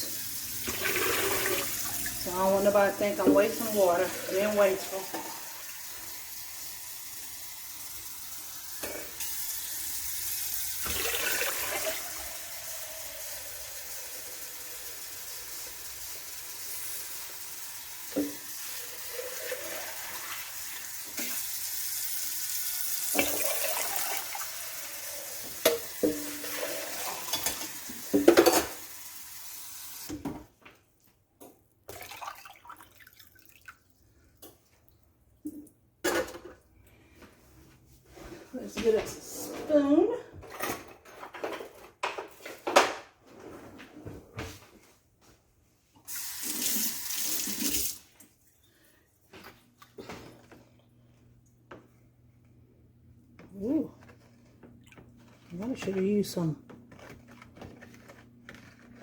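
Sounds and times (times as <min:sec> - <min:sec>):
water filling a container: 0:00.0 - 0:30.1, 0:31.9 - 0:34.3, 0:46.0 - 0:48.2.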